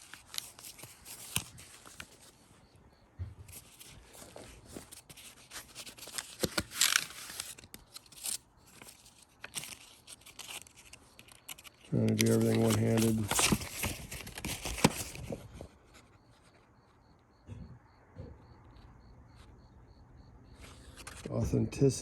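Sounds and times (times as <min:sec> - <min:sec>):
wrapping rustling and tearing: 0:00.0 - 0:02.2, 0:03.5 - 0:15.4.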